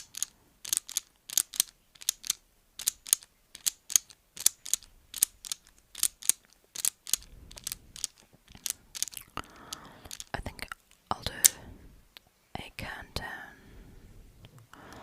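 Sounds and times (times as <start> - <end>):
metal hand tool clicking: 0.0 - 10.3.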